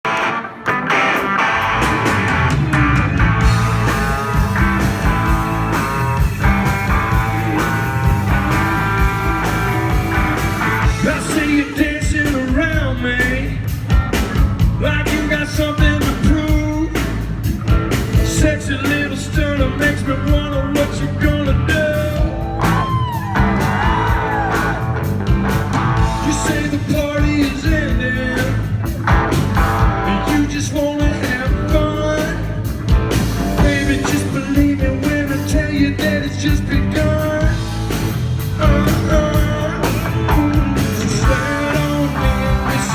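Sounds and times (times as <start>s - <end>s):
live rock band playing: 0.0s - 42.9s
drums keeping a steady beat: 0.1s - 42.9s.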